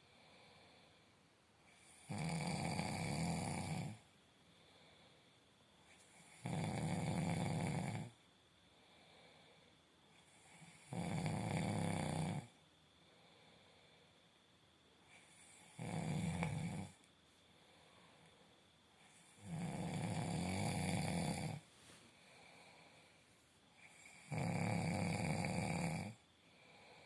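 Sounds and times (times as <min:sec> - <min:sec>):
quiet breathing: 0:00.0 - 0:27.0
person snoring: 0:01.7 - 0:04.0, 0:06.1 - 0:08.2, 0:10.2 - 0:12.6, 0:15.1 - 0:17.0, 0:19.0 - 0:21.6, 0:23.8 - 0:27.0.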